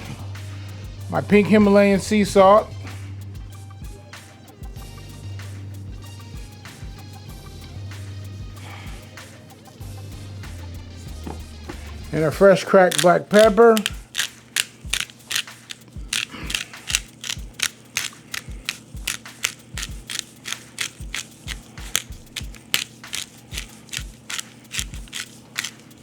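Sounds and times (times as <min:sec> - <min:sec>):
pepper mill grinding: 0:12.2 - 0:26.0.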